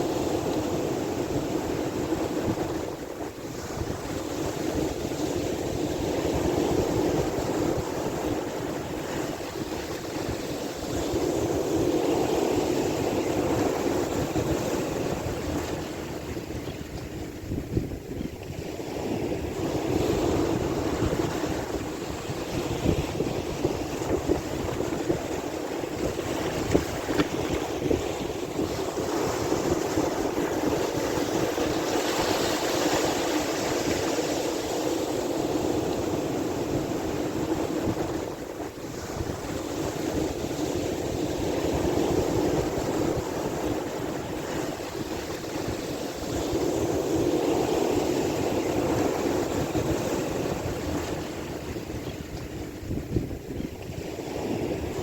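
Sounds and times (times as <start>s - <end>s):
sea waves washing: 0.0s - 55.0s
wind rumbling on microphone: 0.0s - 55.0s.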